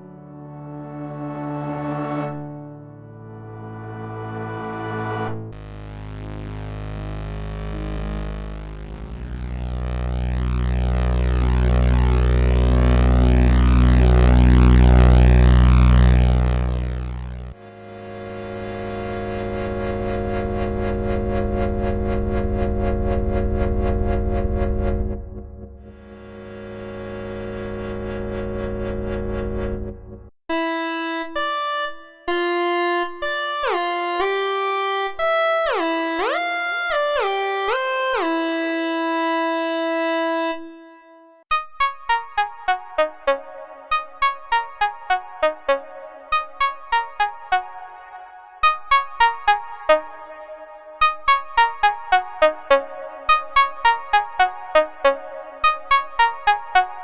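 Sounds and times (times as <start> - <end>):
low synthesizer note: 0.0 - 30.3, 42.1 - 57.0.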